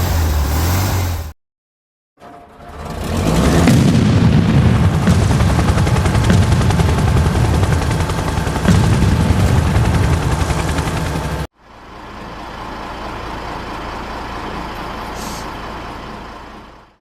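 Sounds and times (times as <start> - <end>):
heavy low rumble: 2.3 - 13.8
rapid gunfire: 3.2 - 11.5.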